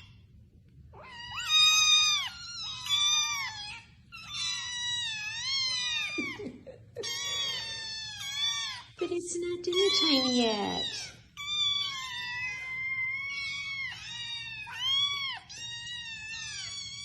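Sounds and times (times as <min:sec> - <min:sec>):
cat meowing: 0:00.9 - 0:09.0, 0:09.6 - 0:17.0
person talking: 0:09.0 - 0:11.0.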